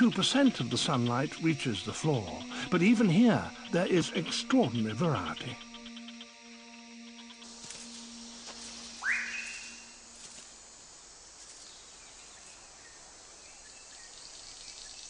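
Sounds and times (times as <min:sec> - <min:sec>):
insect hiss: 0:00.0 - 0:15.0
rising whistled bird call: 0:09.0 - 0:10.0.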